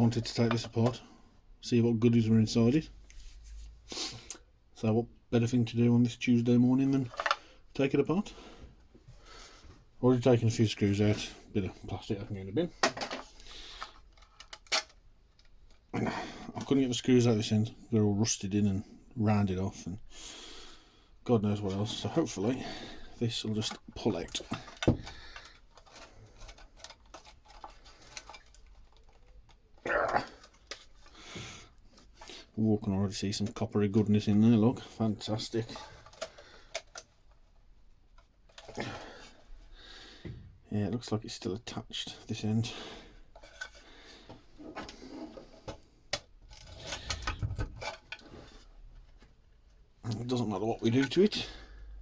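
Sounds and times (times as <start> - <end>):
metal and plastic parts clicking: 12.8 - 15.8, 23.6 - 31.1, 35.6 - 37.6.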